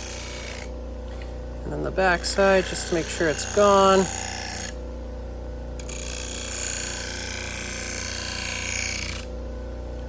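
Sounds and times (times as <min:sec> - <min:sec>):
blade rubbing on buffing wheel: 0:00.0 - 0:00.7, 0:01.8 - 0:04.8, 0:05.8 - 0:09.3
motor hum: 0:00.0 - 0:10.0.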